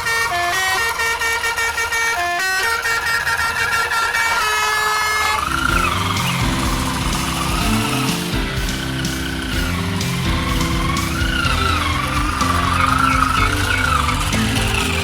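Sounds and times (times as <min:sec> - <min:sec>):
held synth notes: 0:05.4 - 0:15.0
heavy low beat: 0:05.6 - 0:15.0.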